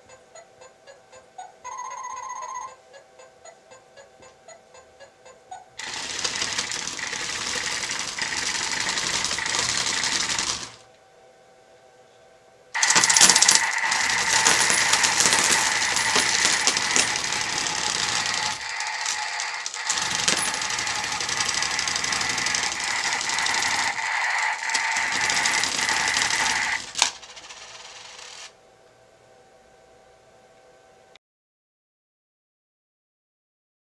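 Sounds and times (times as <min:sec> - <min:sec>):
alarm clock rattling buzz: 0:05.8 - 0:10.8, 0:12.8 - 0:28.5.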